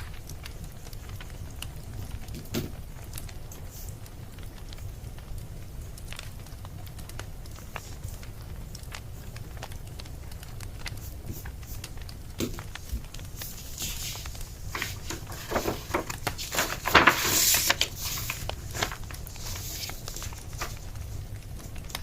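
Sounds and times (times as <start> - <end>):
wood fire crackling and popping: 0.0 - 22.0
rustling and knocks: 12.4 - 20.9.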